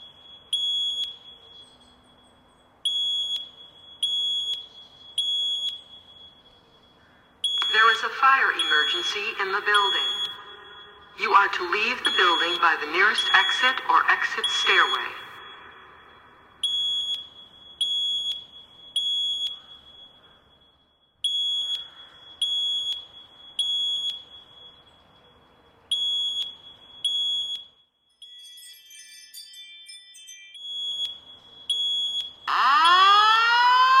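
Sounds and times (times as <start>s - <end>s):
fire alarm high-pitched beeps: 0.0s - 29.0s, 30.1s - 34.0s.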